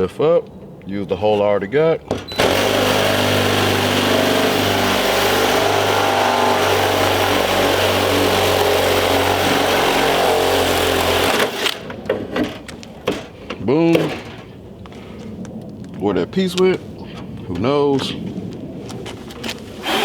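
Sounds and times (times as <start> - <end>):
hole saw grinding: 2.3 - 11.9, 19.8 - 20.0
cordless drill motor hum: 2.4 - 11.8.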